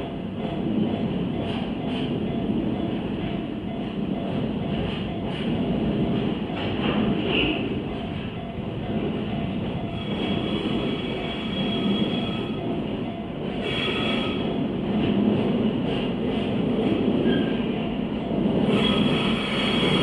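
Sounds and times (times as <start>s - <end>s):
freight train rumble: 0.0s - 20.0s.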